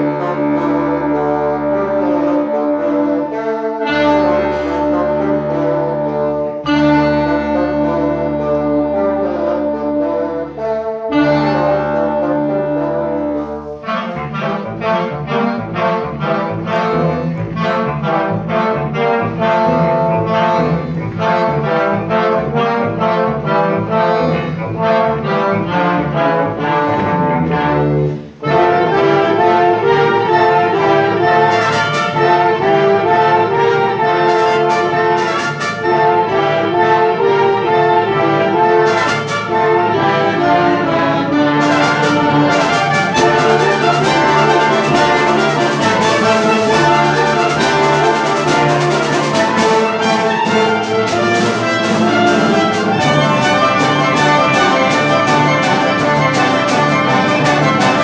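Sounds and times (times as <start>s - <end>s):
live brass ensemble music: 0.0s - 58.0s.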